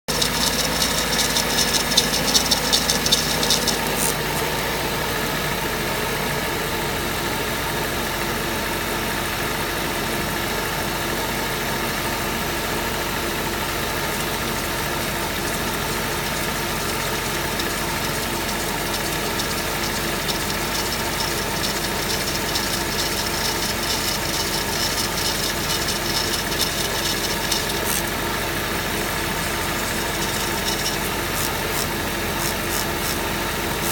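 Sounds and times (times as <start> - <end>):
drive belt squealing: 0.0 - 7.1, 10.6 - 33.9
car engine idling: 0.0 - 33.9.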